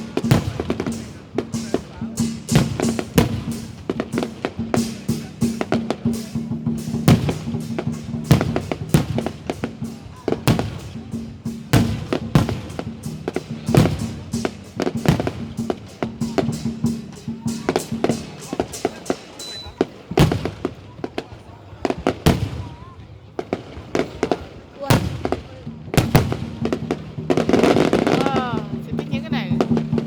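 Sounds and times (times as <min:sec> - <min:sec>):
fireworks bangs and pops: 0:00.0 - 0:30.0
music playing: 0:26.0 - 0:30.0.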